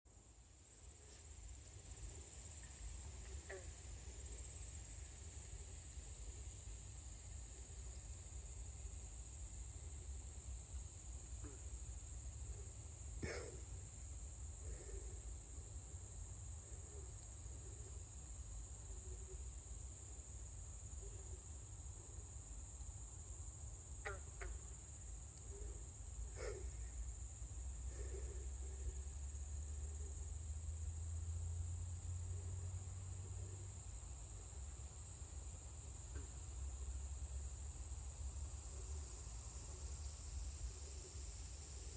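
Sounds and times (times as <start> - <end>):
insects trilling: 0.1 - 41.9
bullfrog croaking: 3.2 - 4.5, 11.3 - 11.8, 24.0 - 27.0.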